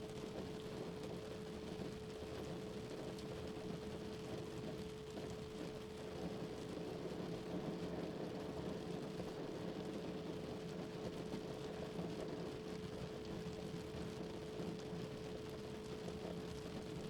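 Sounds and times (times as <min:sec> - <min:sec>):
rain patter: 0:00.1 - 0:17.0.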